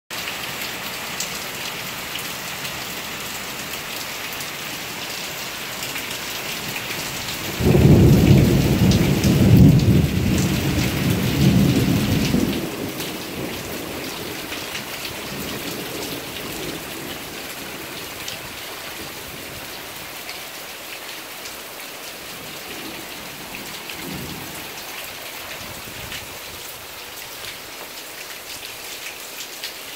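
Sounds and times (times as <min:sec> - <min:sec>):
steady rain falling: 0:00.1 - 0:29.9
thunder rumbling: 0:07.5 - 0:14.4.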